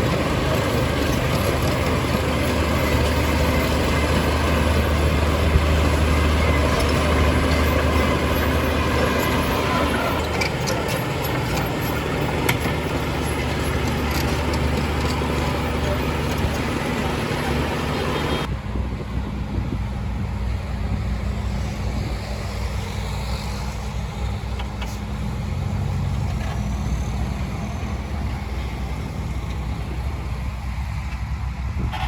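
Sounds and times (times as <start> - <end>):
diesel machinery engine drone: 0.0 - 32.0.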